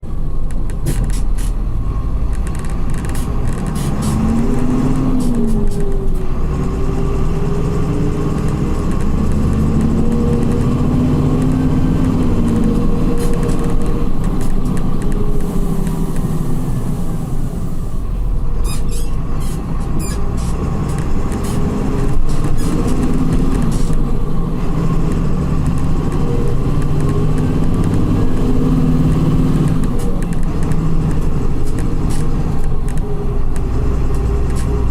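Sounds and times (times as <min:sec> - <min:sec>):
bus diesel engine accelerating: 0:00.0 - 0:34.9
clicks and rattles: 0:08.3 - 0:15.5.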